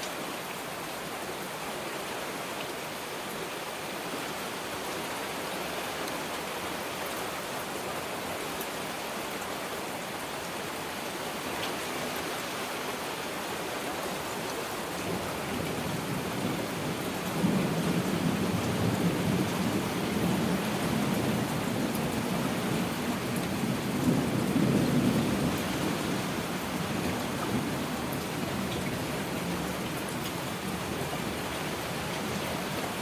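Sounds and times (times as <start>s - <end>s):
heavy rain: 0.0s - 33.0s.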